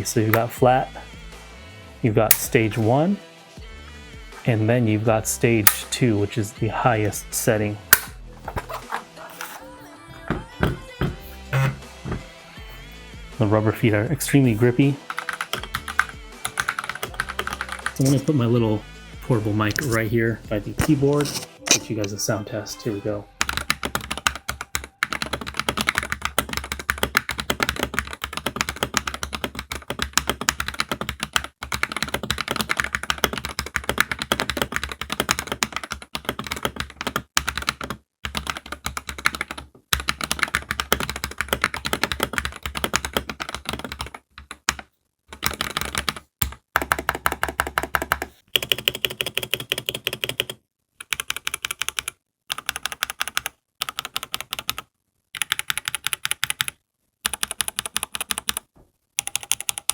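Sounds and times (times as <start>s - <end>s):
mechanical keyboard typing: 15.1s - 18.2s, 23.4s - 59.9s.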